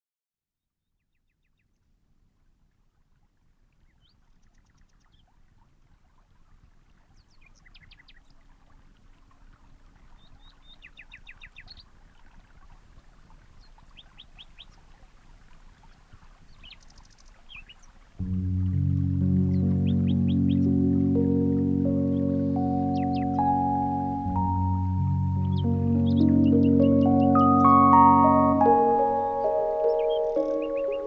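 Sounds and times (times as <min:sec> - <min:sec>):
wild birds chirping: 0:16.6 - 0:31.0
low background rumble: 0:18.2 - 0:29.6.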